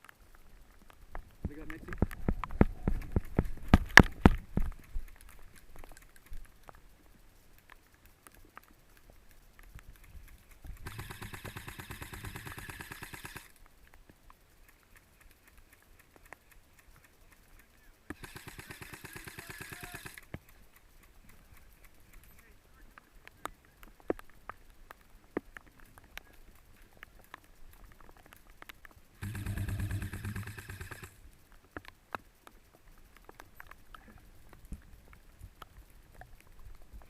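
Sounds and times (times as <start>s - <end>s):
airsoft gun automatic fire: 10.8s - 13.5s, 18.1s - 20.3s, 29.2s - 31.2s.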